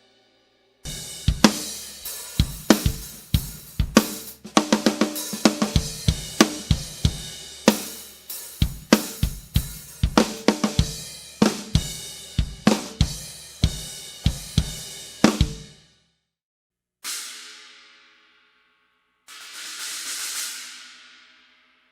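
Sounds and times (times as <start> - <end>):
hi-hat and cymbal strikes: 0.9 - 15.6, 19.3 - 21.5
snare and bass drum hits: 2.4 - 7.9.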